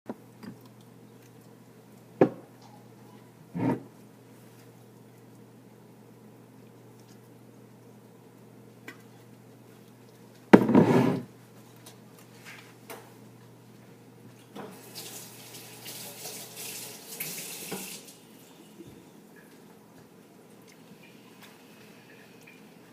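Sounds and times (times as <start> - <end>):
water running from a tap: 14.6 - 18.8.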